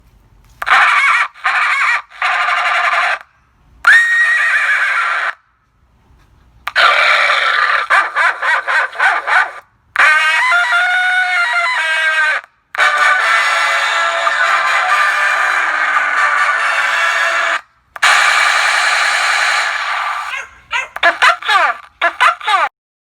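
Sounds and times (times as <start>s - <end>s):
car horn honking: 12.8s - 20.3s.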